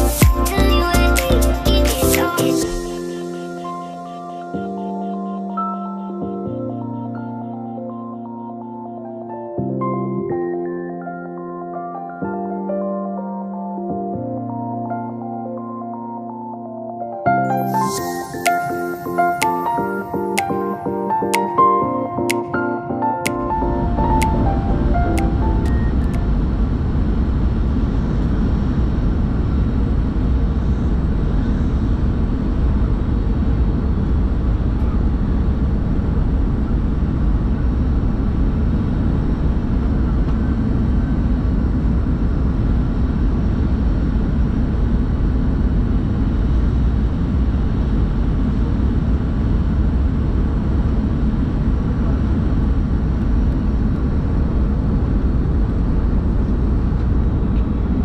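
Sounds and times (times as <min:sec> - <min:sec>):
airplane cabin engine and air rush: 0:23.3 - 0:58.0.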